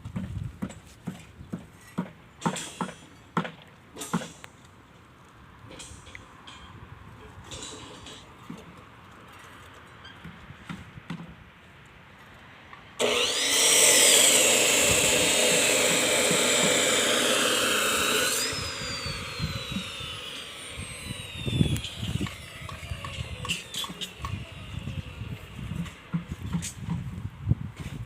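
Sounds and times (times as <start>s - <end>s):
power tool whining: 13.0s - 26.1s.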